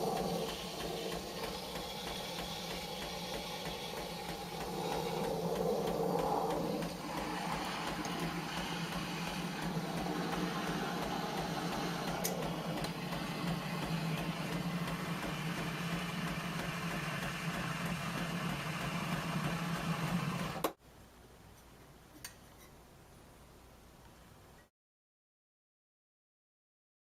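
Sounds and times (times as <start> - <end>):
espresso machine pump buzzing: 0.0 - 20.8.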